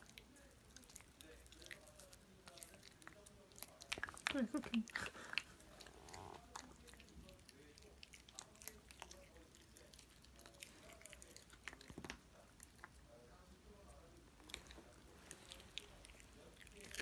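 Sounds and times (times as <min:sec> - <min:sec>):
puppy crunching a snack: 0:00.0 - 0:17.0.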